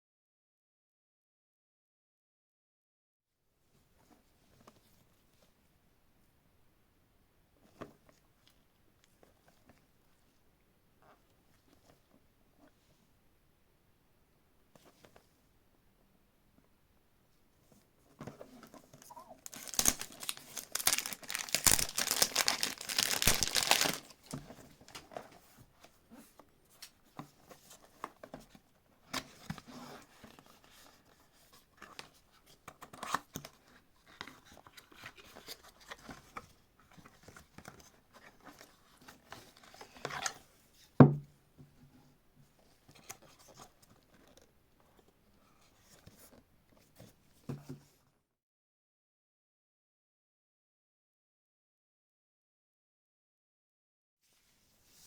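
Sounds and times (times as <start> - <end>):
box rustling and handling: 18.2 - 26.4
wrapping tearing and crinkling: 19.0 - 25.0.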